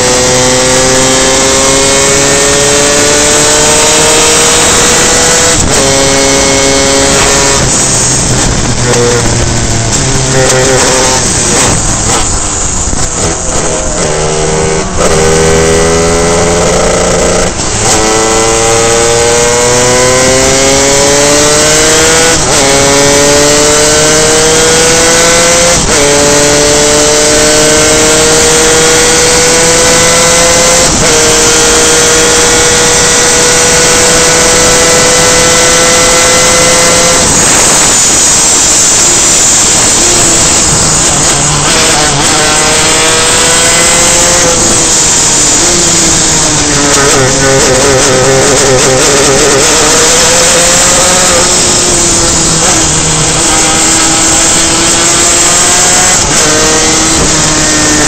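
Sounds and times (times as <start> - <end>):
kart engine at racing speed: 0.0 - 58.0
loud rushing noise: 0.0 - 58.0.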